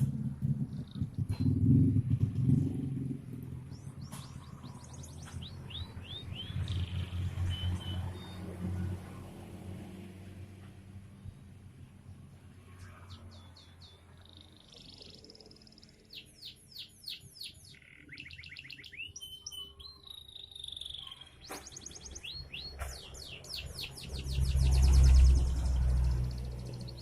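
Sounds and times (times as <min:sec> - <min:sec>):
low rumble: 0:00.0 - 0:07.2
canary singing trills: 0:03.6 - 0:08.5, 0:13.1 - 0:27.0.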